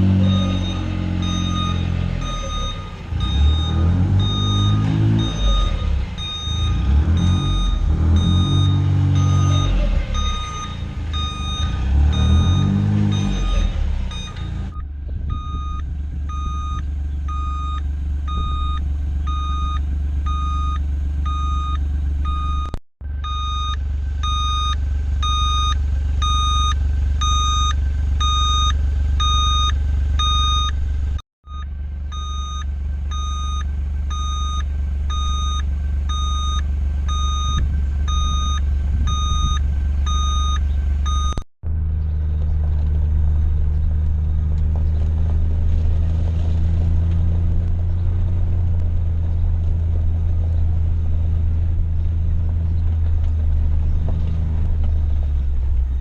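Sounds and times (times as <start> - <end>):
utility vehicle engine revving: 0.0 - 56.0
backup alarm beeps: 0.1 - 30.8, 31.5 - 41.4.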